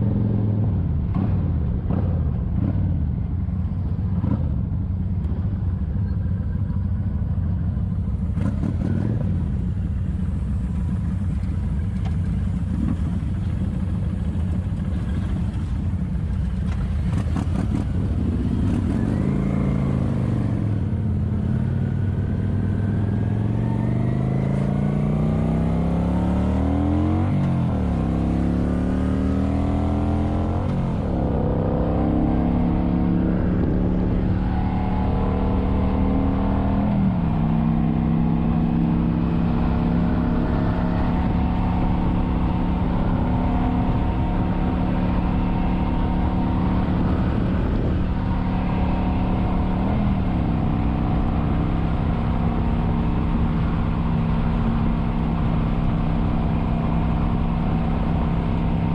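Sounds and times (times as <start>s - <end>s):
motorcycle engine revving: 6.7s - 58.9s.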